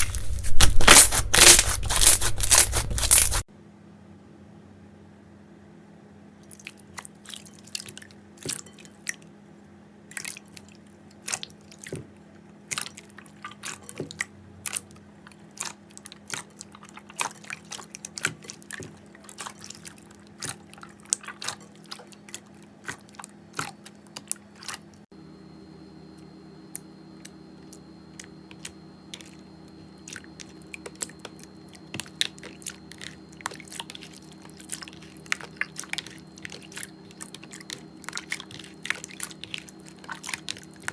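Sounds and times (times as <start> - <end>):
slime crackling and clicking: 0.0 - 3.4.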